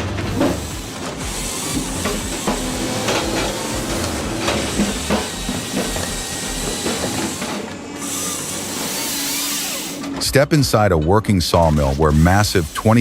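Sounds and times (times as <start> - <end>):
knocks and clunks: 0.0 - 7.8
machinery hissing and rumbling: 0.0 - 10.8, 11.4 - 13.0.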